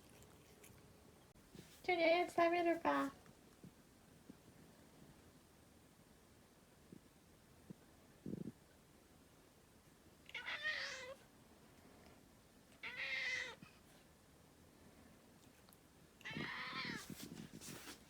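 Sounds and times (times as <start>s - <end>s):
cat meowing: 10.3s - 11.2s, 12.8s - 13.6s, 16.2s - 17.2s.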